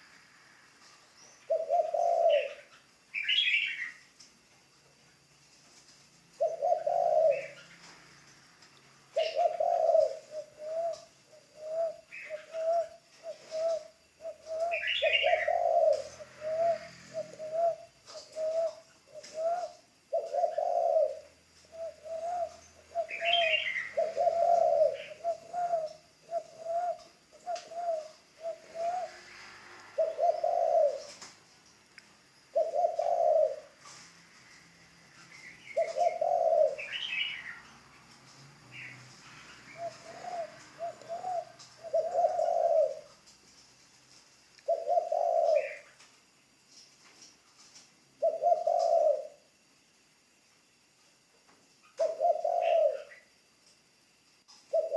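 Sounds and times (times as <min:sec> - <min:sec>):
small bird chirping: 0:01.0 - 0:04.2, 0:09.2 - 0:33.7, 0:34.4 - 0:43.3
dove cooing: 0:01.4 - 0:04.0, 0:06.4 - 0:08.2, 0:09.0 - 0:31.5, 0:32.5 - 0:43.3, 0:44.6 - 0:46.0, 0:48.2 - 0:49.6, 0:51.9 - 0:53.5, 0:54.7 - 0:54.9.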